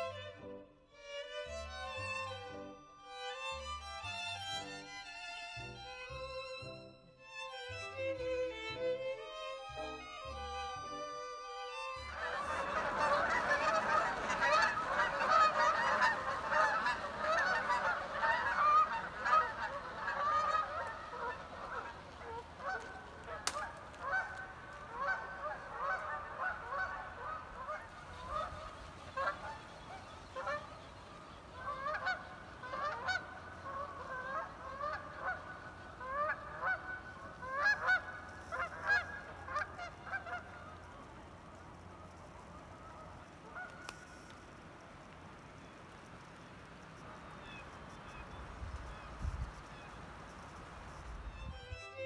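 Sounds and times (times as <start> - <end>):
geese honking: 12.1 - 52.0.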